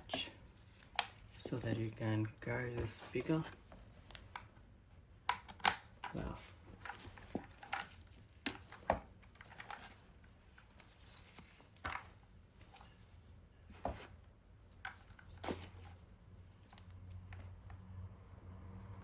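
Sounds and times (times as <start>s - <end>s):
plastic speaker handling clicks: 5.3s - 6.2s.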